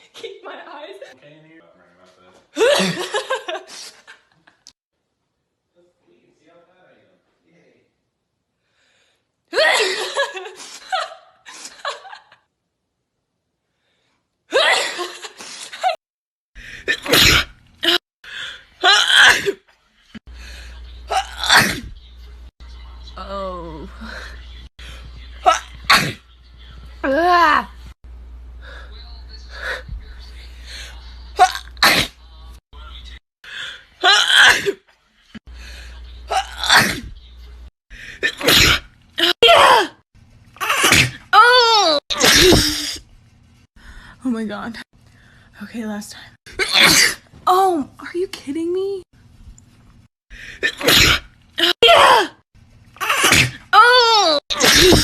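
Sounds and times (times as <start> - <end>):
person sneezing: 40.6 - 41.2, 42.1 - 43.0, 46.6 - 47.2, 50.6 - 52.4, 53.0 - 53.6, 54.5 - 55.0.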